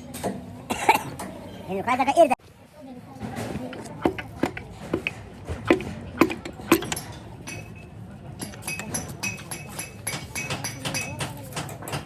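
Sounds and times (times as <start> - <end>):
metal knocks: 3.7 - 7.7
ringing metallic taps: 4.0 - 12.0.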